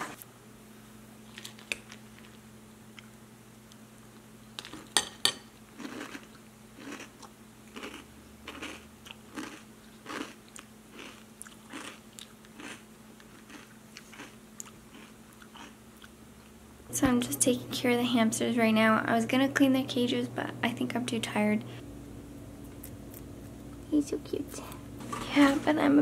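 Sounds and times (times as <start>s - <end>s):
pet crunching food: 5.7s - 16.1s.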